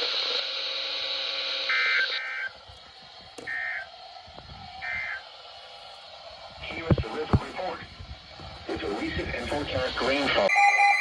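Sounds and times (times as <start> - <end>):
radio hiss: 0.0 - 10.5
warbling two-tone digital bursts: 1.6 - 2.5.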